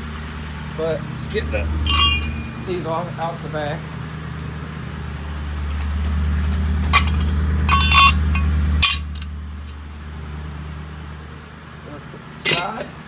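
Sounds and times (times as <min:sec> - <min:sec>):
steady low hum: 0:00.0 - 0:13.0
metal hand tools clinking: 0:01.8 - 0:02.7, 0:04.4 - 0:04.6, 0:06.9 - 0:09.3, 0:12.4 - 0:12.9.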